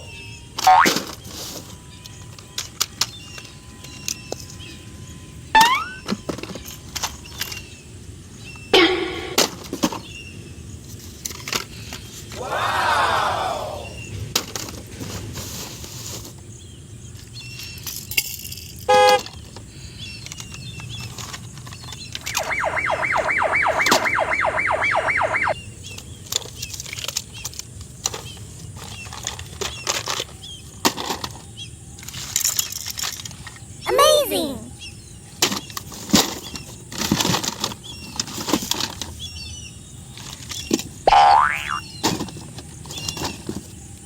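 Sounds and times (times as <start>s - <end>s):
rapid electronic warble: 22.2s - 25.6s
short electronic beep: 22.2s - 25.6s.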